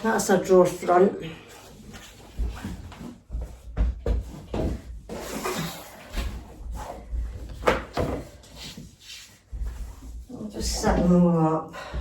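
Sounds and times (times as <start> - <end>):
panels knocking and thudding: 2.3 - 8.5.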